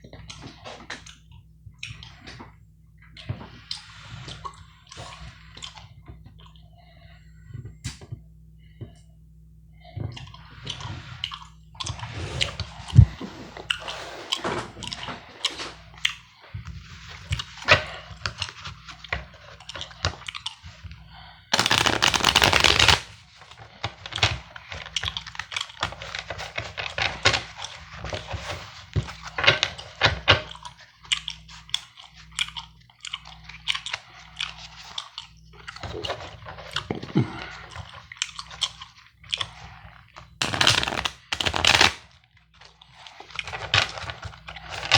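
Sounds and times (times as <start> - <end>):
card riffle shuffle: 21.6 - 23.1, 40.4 - 42.0
playing cards snapping and tapping: 21.6 - 23.1, 40.4 - 42.0
gum chewing: 30.5 - 39.9.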